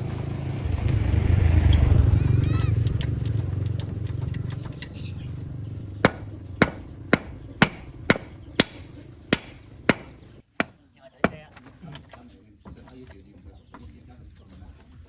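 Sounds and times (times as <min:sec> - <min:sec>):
low rumble: 0:00.0 - 0:06.6
hammer striking: 0:06.0 - 0:11.6.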